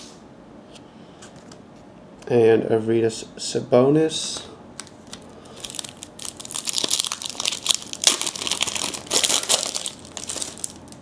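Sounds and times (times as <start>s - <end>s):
card pack wrapper crinkling: 4.8s - 11.0s.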